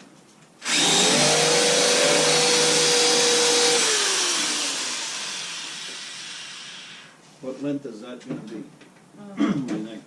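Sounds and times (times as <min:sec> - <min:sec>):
power tool motor running: 0:00.6 - 0:07.2.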